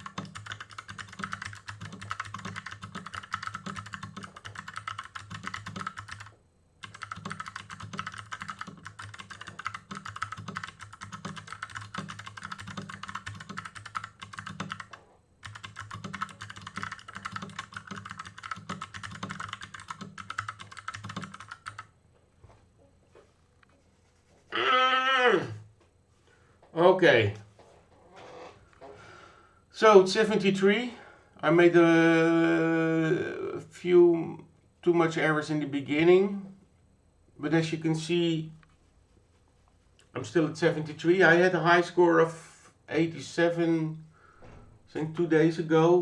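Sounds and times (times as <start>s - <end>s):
mechanical keyboard typing: 0.0s - 21.9s.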